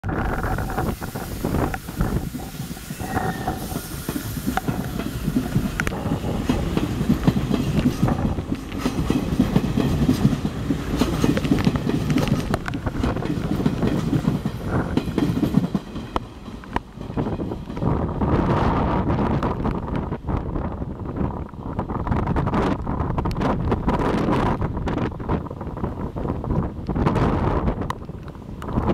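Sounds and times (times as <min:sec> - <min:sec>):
train wheels clattering over rails: 0:00.2 - 0:18.4.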